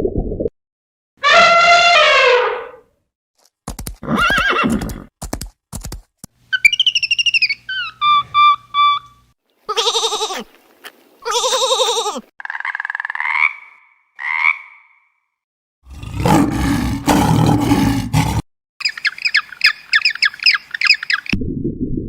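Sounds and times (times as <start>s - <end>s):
quavering bleat-like calls: 9.7s - 10.5s, 11.2s - 12.3s.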